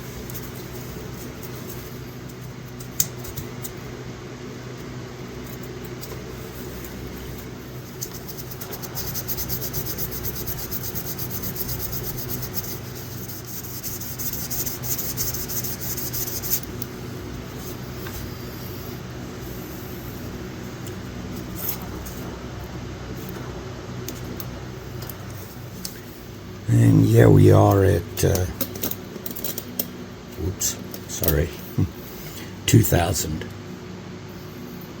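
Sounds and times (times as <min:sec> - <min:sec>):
steady low hum: 0:00.0 - 0:35.0
sandpaper scratching knife blade: 0:08.0 - 0:16.7.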